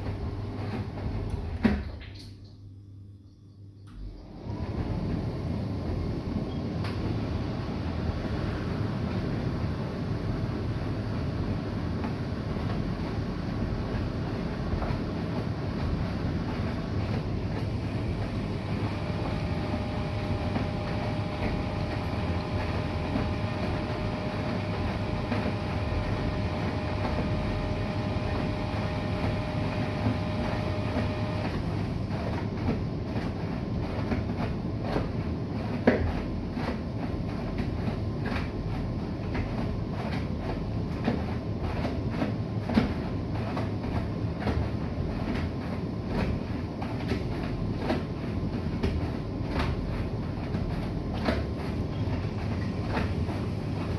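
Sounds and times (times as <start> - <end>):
washing machine drum rumbling: 0.0 - 2.4, 4.0 - 53.9
motor whine: 18.2 - 31.6.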